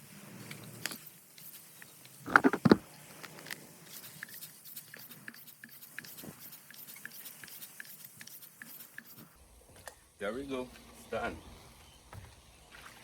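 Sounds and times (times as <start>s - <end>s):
hands fitting bicycle tire: 2.0s - 9.3s.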